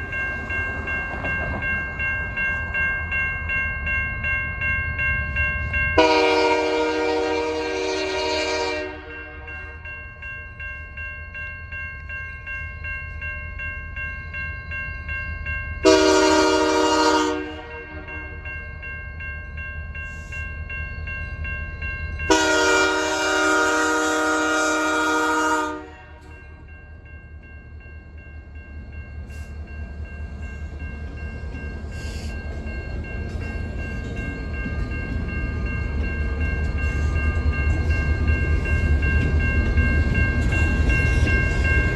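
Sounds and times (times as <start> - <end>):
low train rumble: 0.0 - 41.9
locomotive air horn: 6.0 - 9.5, 15.8 - 18.1, 22.3 - 26.2.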